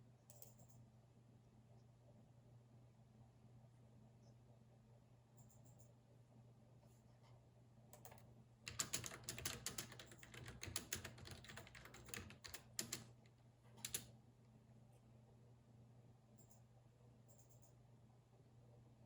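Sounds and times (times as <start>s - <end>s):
computer keyboard typing: 8.0s - 14.1s.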